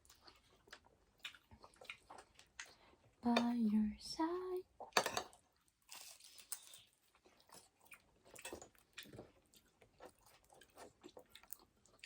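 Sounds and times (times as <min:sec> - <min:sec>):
person chewing: 0:00.0 - 0:03.1, 0:05.6 - 0:12.0.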